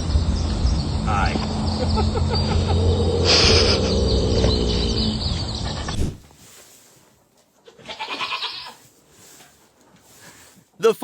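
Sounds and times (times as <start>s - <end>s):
birds chirping: 0.0s - 6.2s
animal bleating: 7.7s - 8.8s.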